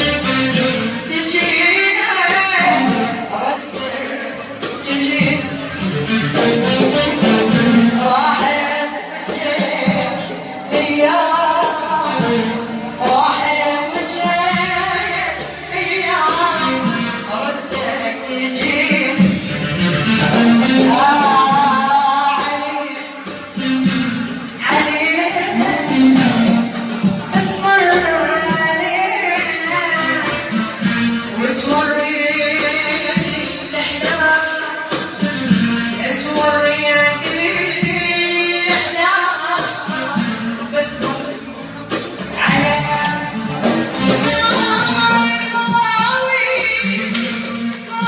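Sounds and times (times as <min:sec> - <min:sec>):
person singing long melodic lines: 0:00.0 - 0:23.9
music accompaniment: 0:00.0 - 0:48.0.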